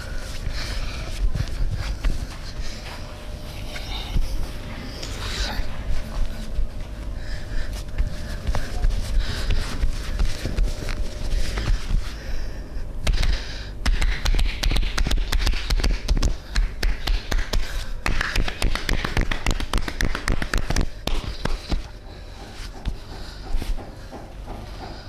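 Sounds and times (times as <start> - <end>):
hands tapping and slapping on body: 13.0 - 21.9.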